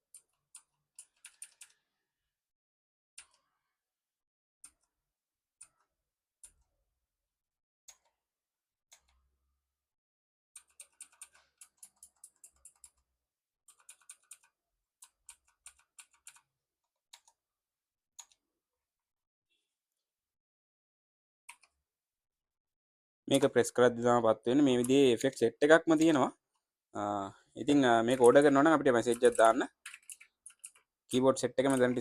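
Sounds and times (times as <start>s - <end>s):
mechanical keyboard clicking: 0.2s - 1.8s, 27.7s - 32.0s.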